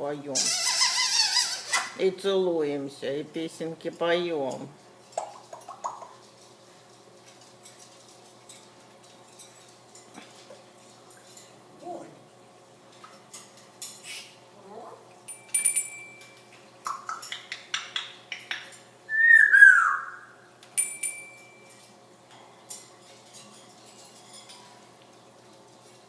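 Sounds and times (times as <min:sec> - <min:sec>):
parrot clicks and pops: 0:05.2 - 0:06.1
parrot whistle gliding down: 0:19.1 - 0:20.3.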